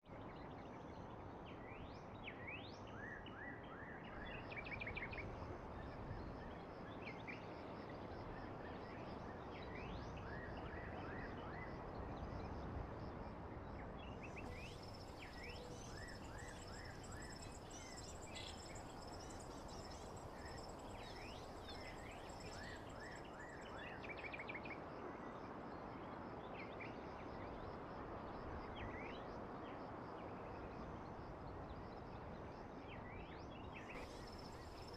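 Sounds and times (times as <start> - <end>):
background hiss: 14.3 - 23.2, 34.0 - 34.9
birds chirping: 14.4 - 23.2.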